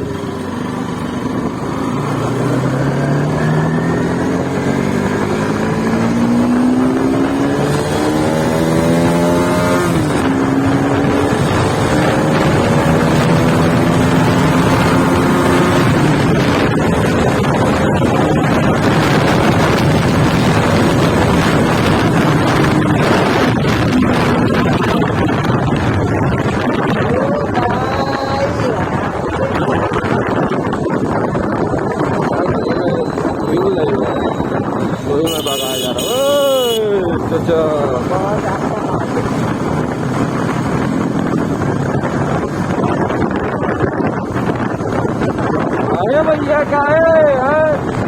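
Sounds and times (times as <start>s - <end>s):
motorcycle engine accelerating: 0.0s - 46.5s
wind noise on microphone: 0.0s - 48.0s.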